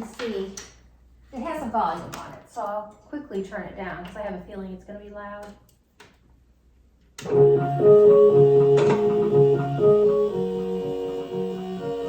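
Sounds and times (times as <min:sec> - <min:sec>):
music box playing organ-like tune: 0:07.3 - 0:12.0.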